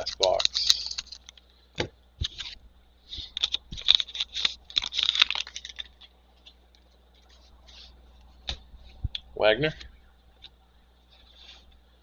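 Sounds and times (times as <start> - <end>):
wrapper tearing and crinkling: 0.0 - 1.4, 3.2 - 6.1.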